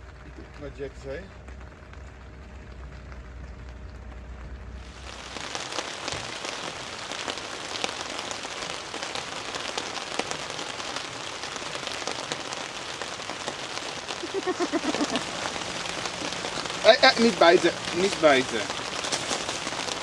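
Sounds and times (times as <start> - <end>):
low steady hum: 0.0 - 5.4, 14.3 - 20.0
rain drops hitting a surface: 0.0 - 20.0.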